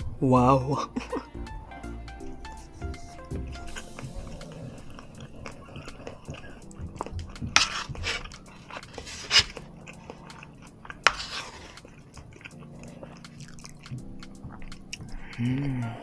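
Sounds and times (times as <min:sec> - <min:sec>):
wet chewing and crunching: 0:03.5 - 0:16.0.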